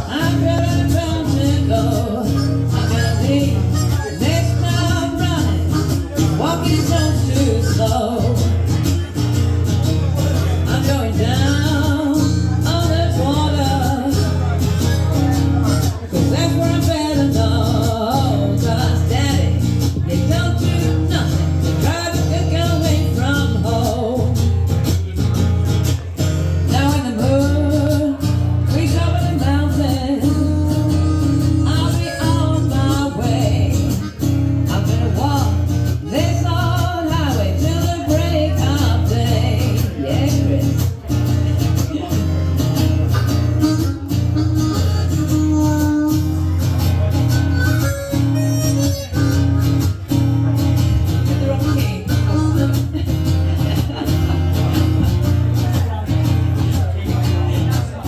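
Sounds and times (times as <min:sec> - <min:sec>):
live band playing: 0:00.0 - 0:58.0
person singing: 0:51.2 - 0:54.1.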